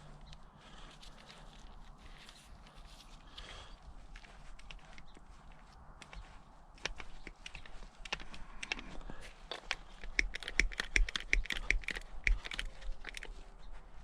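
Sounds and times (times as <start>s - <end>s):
hand tools clicking: 9.5s - 13.3s.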